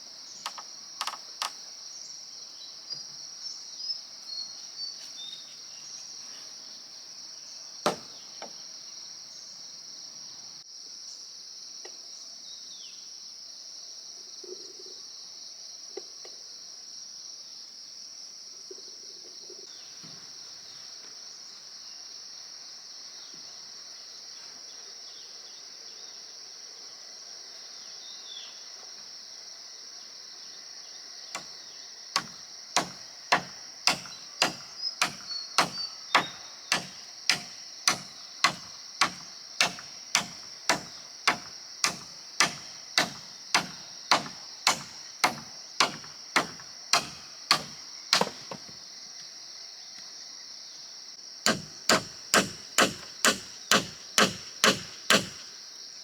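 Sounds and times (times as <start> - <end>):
insects droning: 0.0 - 56.0
tool striking wood: 0.5 - 1.6, 7.9 - 8.2, 32.2 - 48.7, 51.5 - 55.5.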